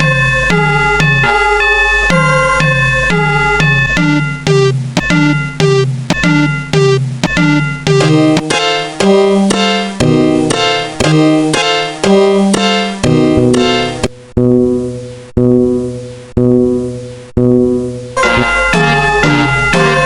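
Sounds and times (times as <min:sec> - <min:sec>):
keyboard playing bouncy melody: 0:00.0 - 0:14.1, 0:18.2 - 0:20.0.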